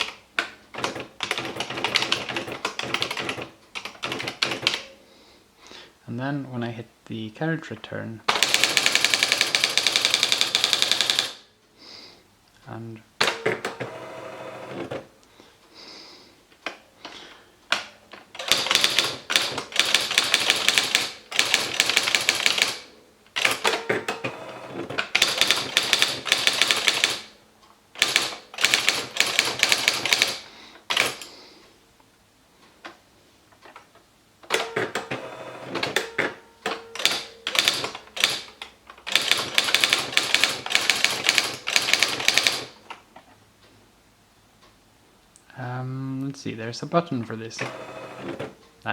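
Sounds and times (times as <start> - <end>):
electric typewriter typing: 0.0 - 4.9, 8.3 - 11.5, 13.2 - 15.1, 17.7 - 27.4, 28.0 - 31.3, 34.5 - 43.0, 47.6 - 48.6
typewriter clicks: 0.0 - 4.9, 8.3 - 11.4, 17.7 - 27.3, 28.0 - 31.3, 34.5 - 35.2, 35.8 - 43.0.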